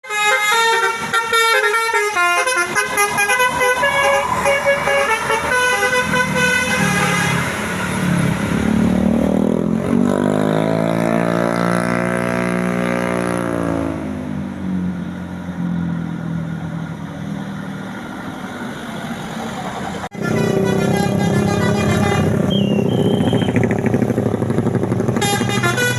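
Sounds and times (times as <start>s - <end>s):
musical bus horn: 0.0s - 8.0s, 20.1s - 23.6s, 25.1s - 25.9s
road noise: 0.0s - 25.9s
bus engine passing: 0.2s - 25.9s.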